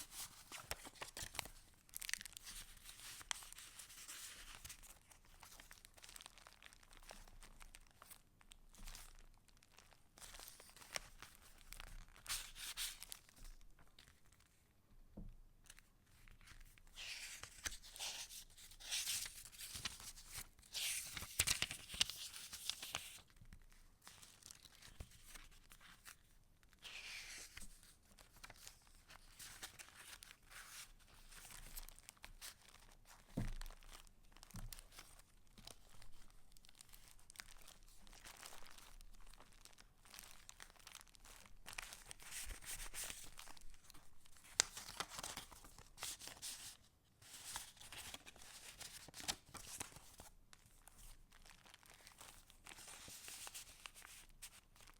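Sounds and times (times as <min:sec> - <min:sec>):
paper pages rustling: 0:00.0 - 0:06.5, 0:10.2 - 0:14.5, 0:15.7 - 0:33.9, 0:41.2 - 0:50.3.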